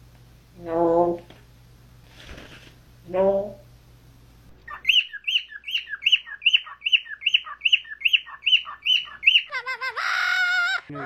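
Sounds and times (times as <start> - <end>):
parrot chirping: 4.6 - 11.0.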